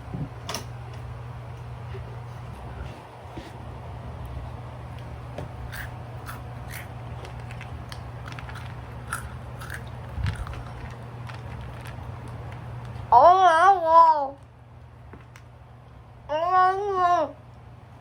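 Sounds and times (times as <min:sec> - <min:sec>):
steady low hum: 0:00.0 - 0:18.0
chewing crunchy food: 0:05.6 - 0:13.1.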